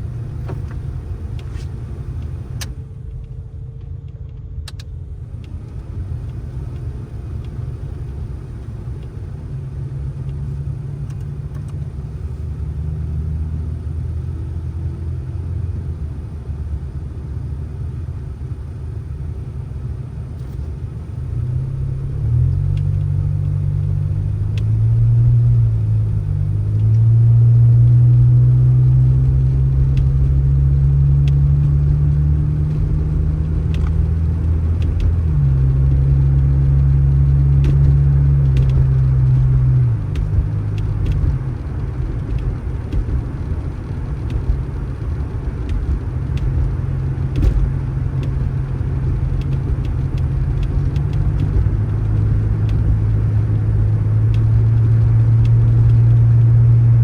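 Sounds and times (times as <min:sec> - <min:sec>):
vehicle engine droning: 0:00.0 - 0:57.0.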